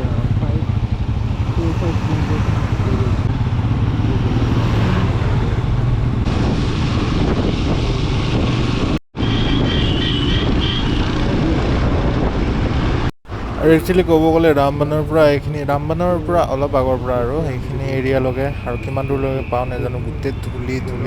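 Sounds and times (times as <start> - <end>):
motorcycle engine running: 0.0 - 9.0.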